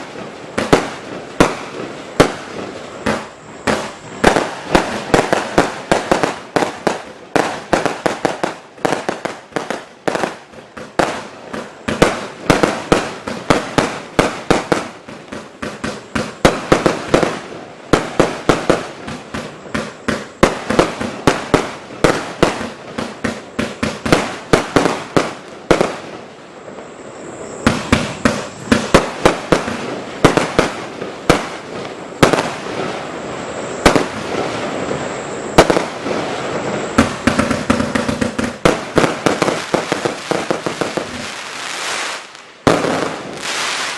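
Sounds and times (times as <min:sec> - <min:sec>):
firework hiss: 0:00.0 - 0:43.9
fireworks banging and cracking: 0:00.0 - 0:43.9.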